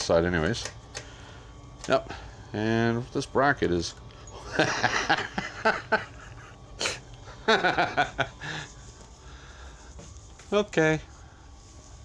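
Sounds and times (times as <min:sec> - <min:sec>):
man muttering: 0:06.8 - 0:07.1.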